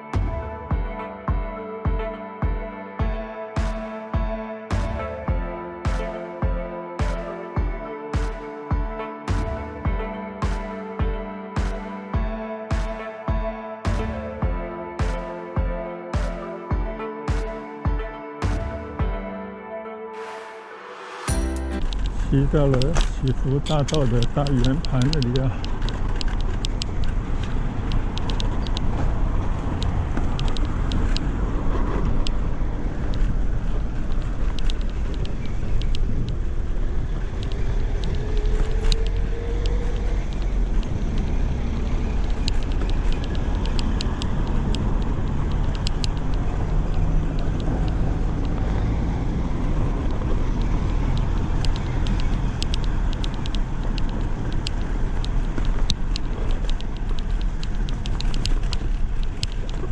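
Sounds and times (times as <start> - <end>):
wind and road rumble: 21.8 - 59.9
bicycle clicks and rattles: 51.5 - 59.9.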